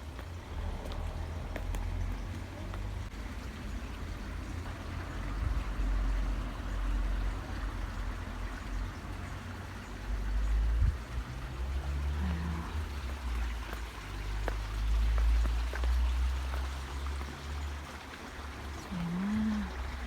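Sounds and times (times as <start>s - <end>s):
wind buffeting microphone: 10.7s - 11.5s.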